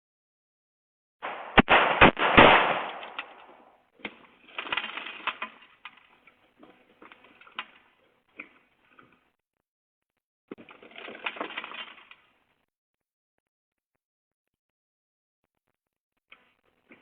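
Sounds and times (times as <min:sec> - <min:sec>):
handgun shots: 0:01.2 - 0:03.7.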